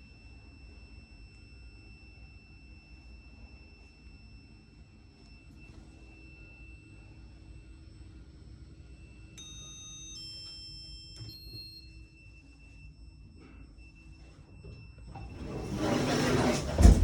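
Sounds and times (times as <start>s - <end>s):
electronic lift chime: 0.0s - 16.8s
faint steady whine: 0.0s - 17.0s
lift car hum: 13.4s - 17.0s.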